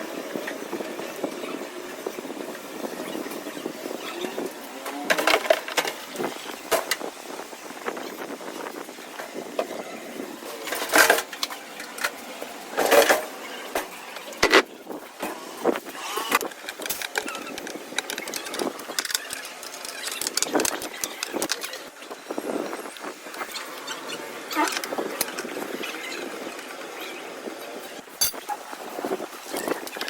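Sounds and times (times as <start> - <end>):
tools and parts clattering: 28.2 - 28.6.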